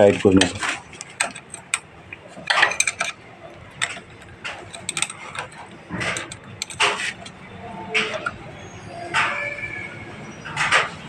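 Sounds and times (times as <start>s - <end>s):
metallic clicks and clinks: 0.3s - 8.4s.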